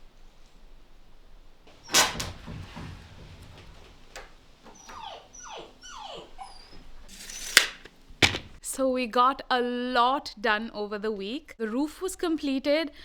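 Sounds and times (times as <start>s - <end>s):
dog whimpering: 4.7s - 7.6s.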